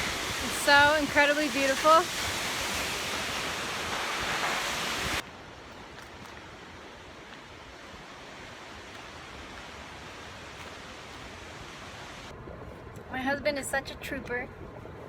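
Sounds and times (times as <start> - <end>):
waterfall rushing: 0.0 - 5.2, 6.8 - 12.3.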